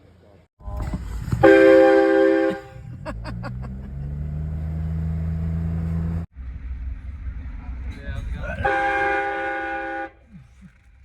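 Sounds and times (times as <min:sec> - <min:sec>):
train horn chord blast: 0:01.4 - 0:02.7, 0:08.6 - 0:10.2.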